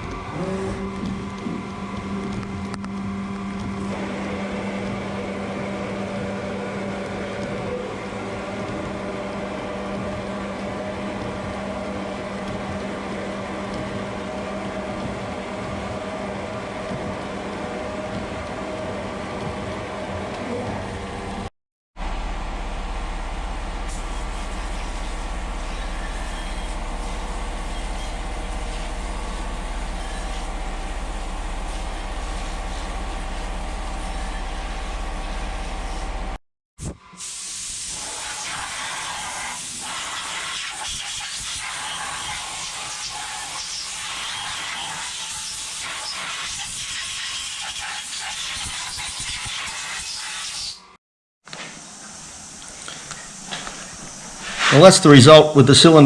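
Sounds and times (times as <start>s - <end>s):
machine hum: 0.0s - 36.4s
wet blasting hiss: 23.9s - 36.1s, 37.1s - 50.8s, 51.6s - 55.2s.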